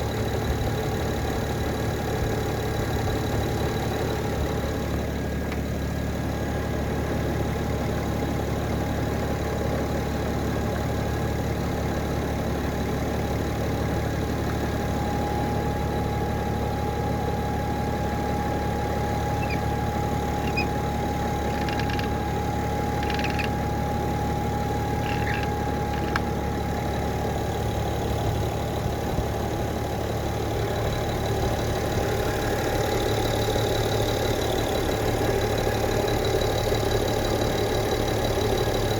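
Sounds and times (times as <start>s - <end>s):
car engine idling: 0.0s - 38.9s
faint clicks: 19.4s - 23.7s, 24.5s - 26.4s.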